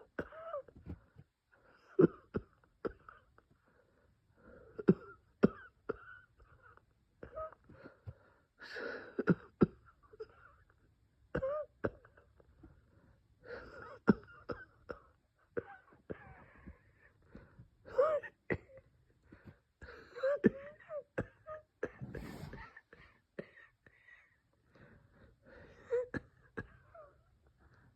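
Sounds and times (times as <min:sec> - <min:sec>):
person coughing: 0:20.5 - 0:22.7
wheezing breaths: 0:21.9 - 0:23.1.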